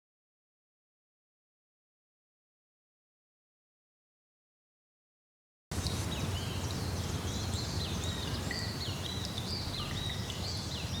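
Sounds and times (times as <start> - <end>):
small birds chirping: 5.7 - 11.0.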